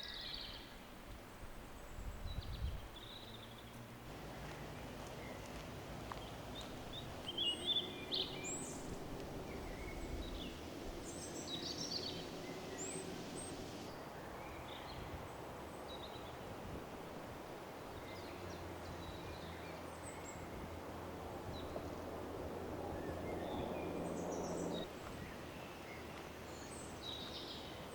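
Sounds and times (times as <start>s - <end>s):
small birds chirping: 1.6s - 16.5s, 22.9s - 27.9s
steady low background noise: 3.9s - 27.9s.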